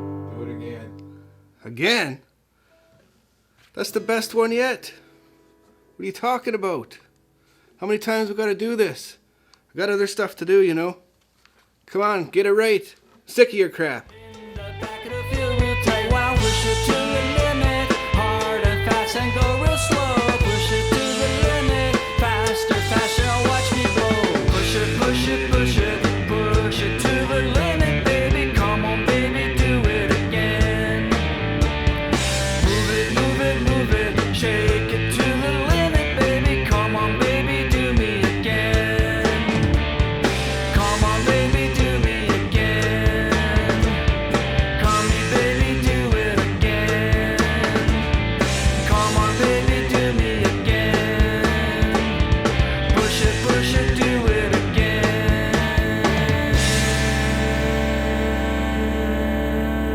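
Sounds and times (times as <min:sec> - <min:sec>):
rock music with vocals: 0:14.1 - 0:59.9.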